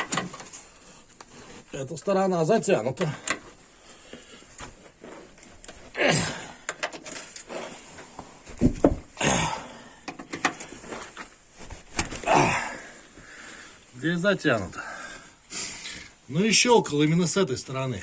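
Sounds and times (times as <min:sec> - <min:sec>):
scraping rustling sounds: 0:00.0 - 0:06.0, 0:10.6 - 0:12.3.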